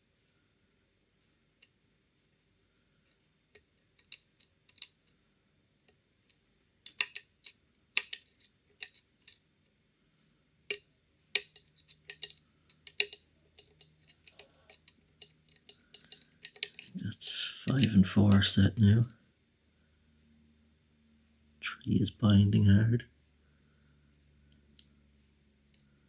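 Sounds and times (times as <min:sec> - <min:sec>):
lock pick clicking in lock: 0:06.9 - 0:09.4, 0:11.4 - 0:16.9.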